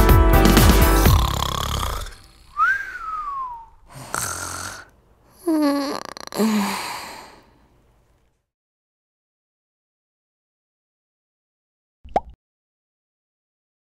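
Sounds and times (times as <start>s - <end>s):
music: 0.0s - 1.9s
person snoring: 1.0s - 7.6s.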